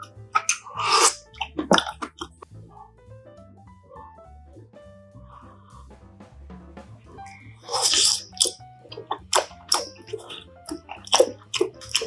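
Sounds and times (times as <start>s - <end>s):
wet chewing: 0.0s - 2.6s, 7.2s - 12.0s
soft background music: 0.0s - 12.0s.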